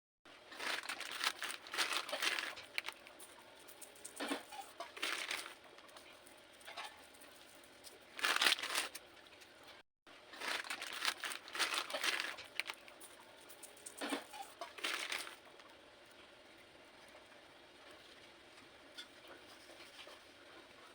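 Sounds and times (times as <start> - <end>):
cornstarch blocks crunching: 0.5 - 9.0, 10.3 - 15.5.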